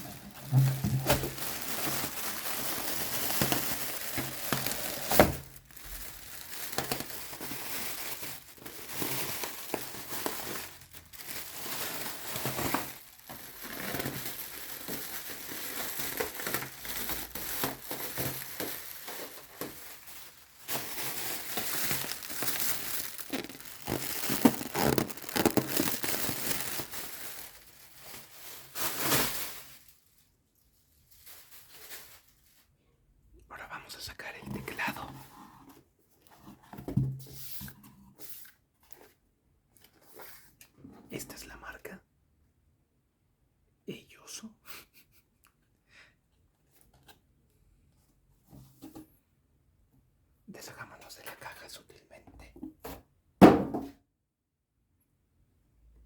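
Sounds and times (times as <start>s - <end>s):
packaging crinkling and rustling: 0.0s - 30.3s, 31.0s - 32.7s.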